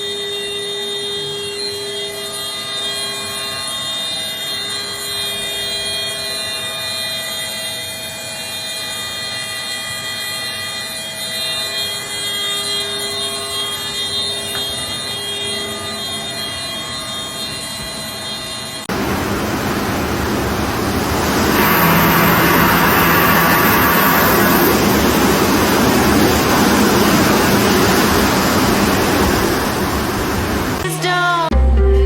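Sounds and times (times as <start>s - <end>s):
steady hum with held tones: 0.0s - 32.0s
rushing floodwater: 18.9s - 30.8s.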